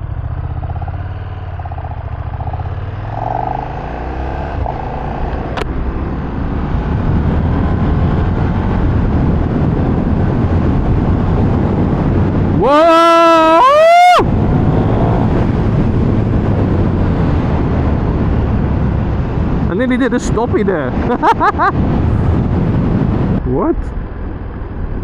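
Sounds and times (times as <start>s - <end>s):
motorcycle engine pulling away: 0.0s - 12.4s.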